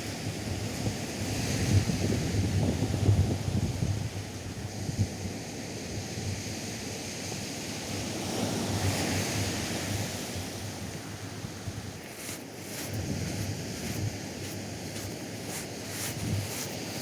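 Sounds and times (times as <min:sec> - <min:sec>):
surf washing onto beach: 0:11.9 - 0:17.0.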